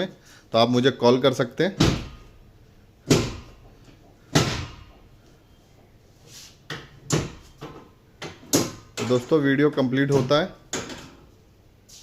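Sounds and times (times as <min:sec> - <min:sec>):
sharp knocks: 0:03.0 - 0:05.1.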